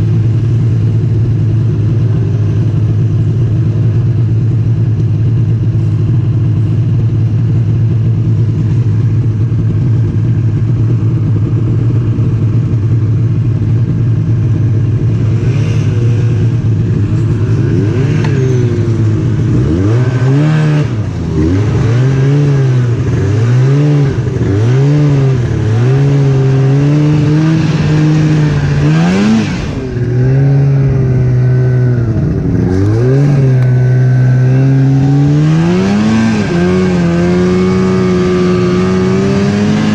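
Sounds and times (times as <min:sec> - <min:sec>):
snowmobile engine revving: 0:09.6 - 0:39.9.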